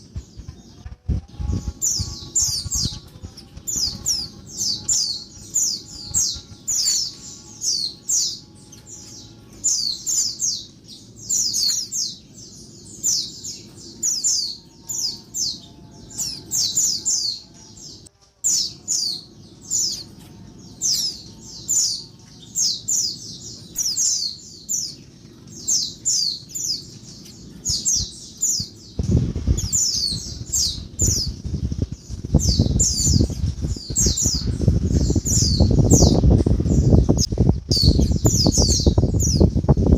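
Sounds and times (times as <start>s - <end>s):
loud low rumble: 0.0s - 6.8s, 27.7s - 39.9s
small bird chirping: 0.0s - 39.9s.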